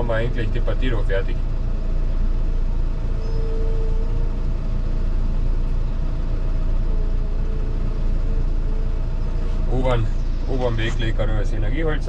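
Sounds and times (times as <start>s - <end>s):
diesel engine running: 0.0s - 12.0s
faint thin whine: 2.8s - 12.0s.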